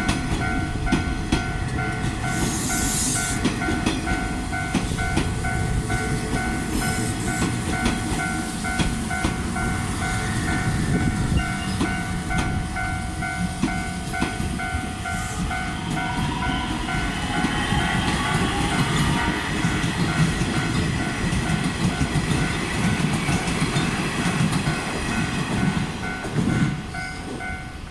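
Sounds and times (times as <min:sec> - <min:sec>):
electric train rumbling past: 0:00.0 - 0:27.9
level-crossing alarm bell ringing: 0:00.0 - 0:27.9
train wheels clicking over rail joints: 0:00.0 - 0:27.9.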